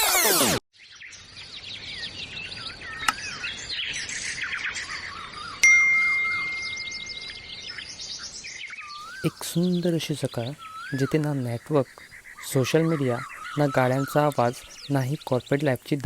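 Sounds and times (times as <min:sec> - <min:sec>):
birds chirping and singing: 0:00.8 - 0:16.0
bell-like ding: 0:05.6 - 0:07.7.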